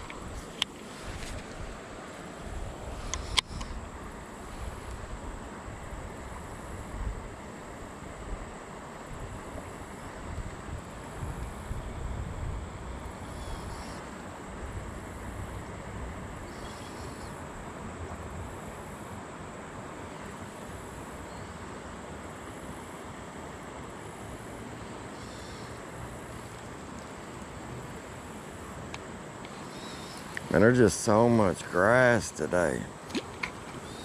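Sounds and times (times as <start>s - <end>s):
insect calls: 0.0s - 34.0s
wind rumble on microphone: 2.4s - 16.6s
high-pitched insect drone: 2.9s - 8.0s, 9.0s - 34.0s.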